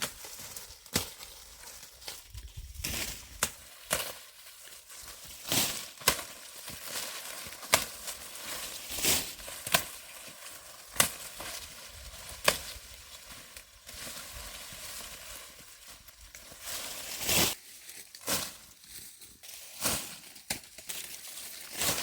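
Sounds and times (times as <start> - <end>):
dry corn stalks rustling: 0.0 - 22.0
corn ears snapping off: 5.4 - 12.8.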